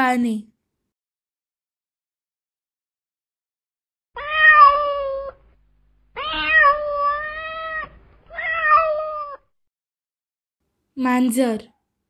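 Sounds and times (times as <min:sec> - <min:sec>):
cat meowing: 0:04.2 - 0:05.5, 0:06.2 - 0:09.5.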